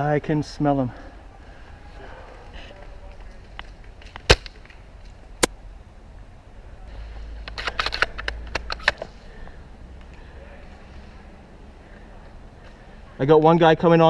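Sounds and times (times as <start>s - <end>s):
airsoft gun cracks: 4.2s - 4.8s.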